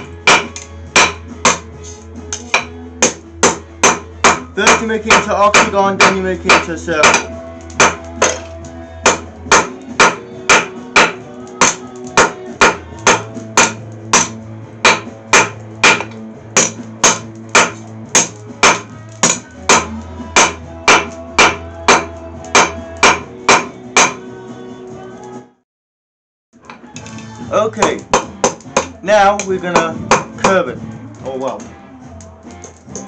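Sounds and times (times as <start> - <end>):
hammer striking steel on anvil: 0.0 - 1.7, 2.4 - 24.2
background music: 0.0 - 25.6, 26.6 - 33.0.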